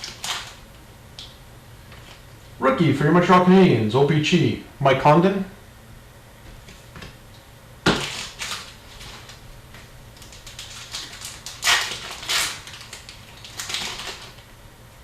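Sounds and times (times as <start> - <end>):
card wrappers rustling: 0.0 - 0.6, 7.9 - 14.5.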